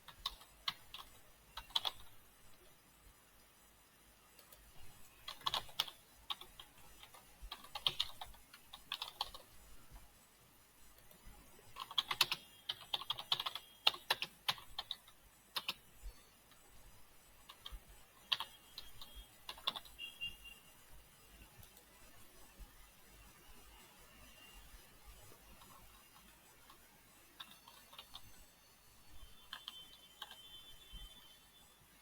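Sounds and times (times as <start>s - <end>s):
computer keyboard typing: 0.0s - 2.2s, 4.4s - 9.6s, 10.9s - 15.9s, 17.4s - 20.2s, 25.4s - 26.8s, 27.4s - 28.4s, 29.3s - 30.6s.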